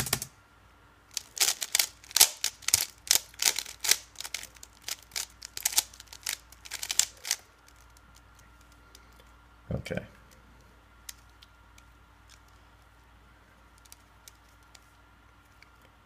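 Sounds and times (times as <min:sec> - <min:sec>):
puzzle cube clicking as turned: 0:01.1 - 0:09.0.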